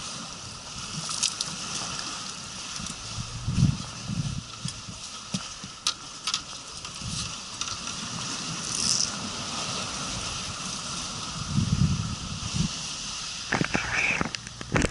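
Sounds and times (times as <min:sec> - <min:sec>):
wind buffeting microphone: 0:02.7 - 0:05.8, 0:06.8 - 0:14.9
hiss of moving air and water: 0:08.2 - 0:14.9.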